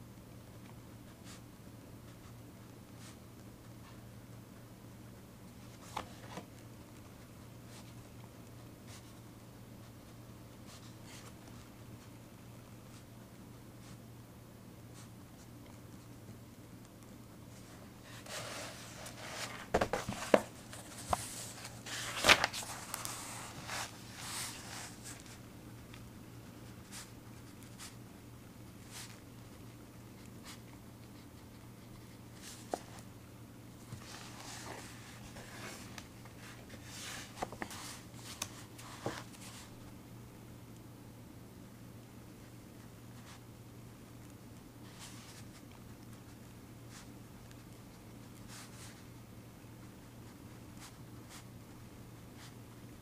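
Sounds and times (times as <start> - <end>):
paper rustling: 17.5 - 25.4, 33.8 - 39.7.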